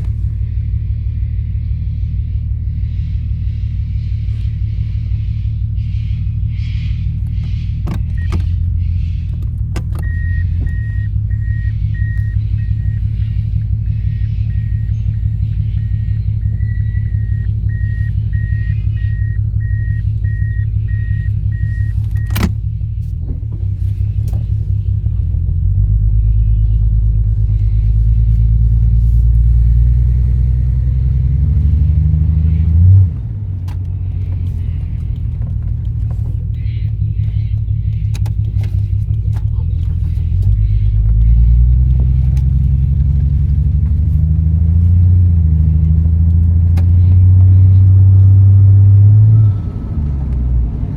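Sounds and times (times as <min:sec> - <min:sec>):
car engine revving: 0:00.0 - 0:50.9
repeating high beep: 0:10.0 - 0:13.1, 0:14.0 - 0:22.4.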